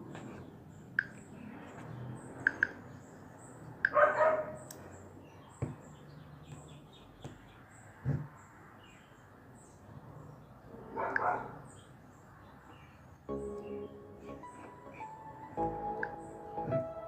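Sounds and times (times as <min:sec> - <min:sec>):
sharp clicks: 0:01.0 - 0:01.3, 0:02.4 - 0:02.8
dog barking: 0:03.9 - 0:04.6, 0:10.8 - 0:11.7.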